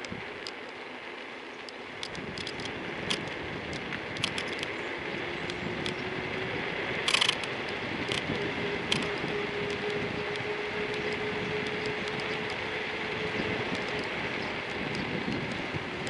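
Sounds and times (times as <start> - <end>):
road and wind noise: 0.0 - 16.0
electric motor whine: 2.2 - 16.0.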